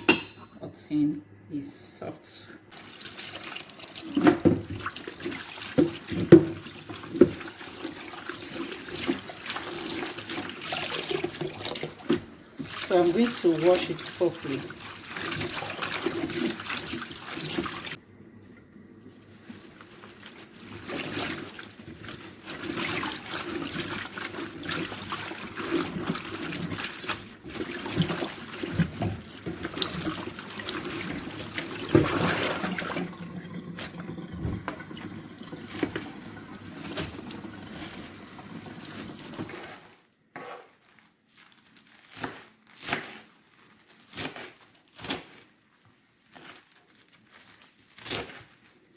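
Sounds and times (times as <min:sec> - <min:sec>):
water running and splashing: 0:02.7 - 0:18.0, 0:19.1 - 0:40.0.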